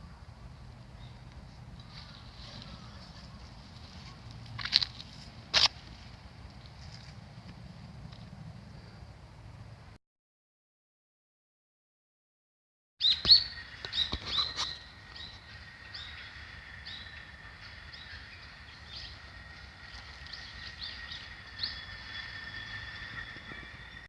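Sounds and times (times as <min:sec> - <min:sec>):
small birds chirping: 0:00.0 - 0:04.4, 0:13.0 - 0:24.0
steady high tone: 0:13.4 - 0:24.0.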